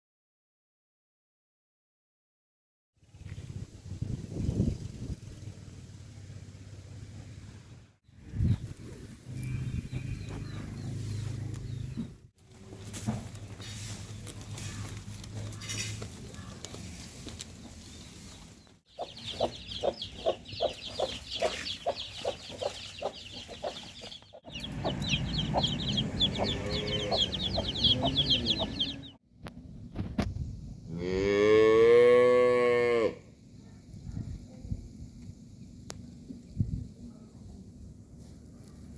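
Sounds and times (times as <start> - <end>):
chickens clucking: 16.5 - 29.2
cow mooing: 26.2 - 28.9, 30.9 - 33.3.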